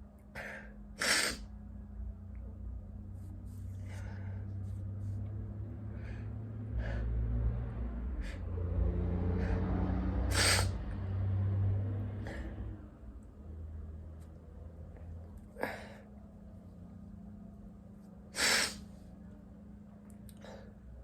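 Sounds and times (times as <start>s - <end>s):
low hum: 0.0s - 21.0s
man gasping breaths: 3.7s - 5.0s, 15.5s - 16.2s.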